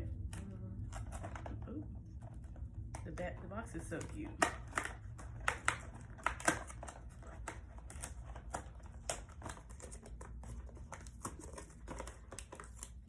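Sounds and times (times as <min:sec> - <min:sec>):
packaging crinkling: 0:04.4 - 0:13.0.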